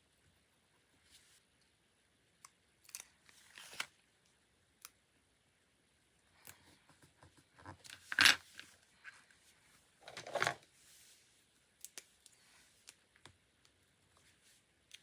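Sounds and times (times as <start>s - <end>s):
paper and stationery handling: 3.3s - 3.9s.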